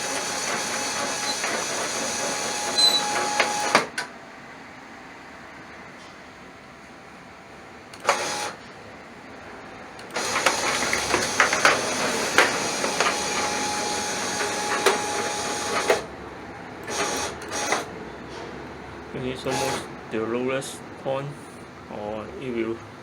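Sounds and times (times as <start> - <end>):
stepper motor whine and clicks: 0.0 - 4.1, 7.9 - 8.6, 10.0 - 16.1, 16.8 - 17.9, 19.5 - 19.9.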